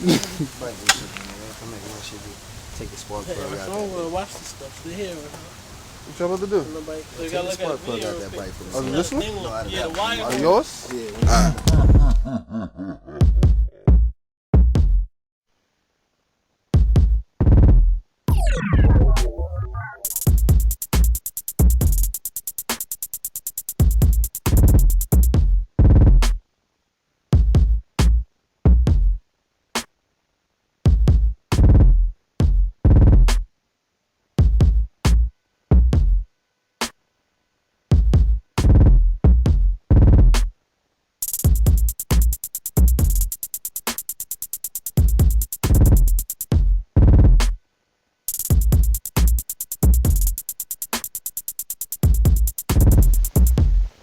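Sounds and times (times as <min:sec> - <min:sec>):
drum machine beat: 0:11.2 - 0:12.3, 0:13.2 - 0:15.1, 0:16.8 - 0:26.4, 0:27.4 - 0:29.2, 0:30.9 - 0:33.5, 0:34.4 - 0:36.2, 0:37.9 - 0:40.5, 0:41.2 - 0:47.6, 0:48.3 - 0:54.0.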